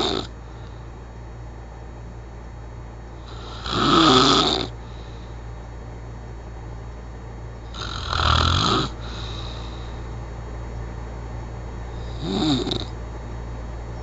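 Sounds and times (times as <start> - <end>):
person snoring: 0.0 - 0.3, 3.2 - 4.8, 7.7 - 9.9, 11.9 - 13.0
steady low hum: 0.0 - 14.0.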